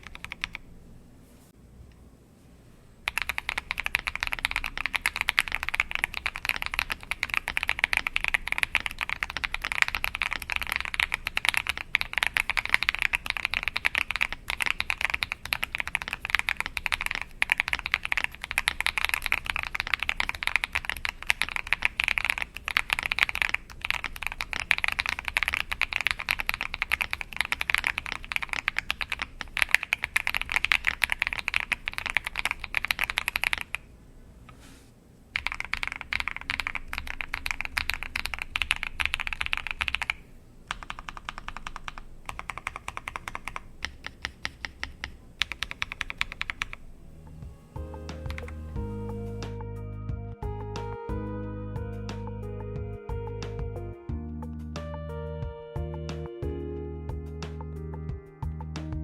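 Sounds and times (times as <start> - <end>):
fast typing on mechanical keyboard: 0.0 - 0.6, 3.1 - 33.9, 35.4 - 46.9, 48.2 - 48.6.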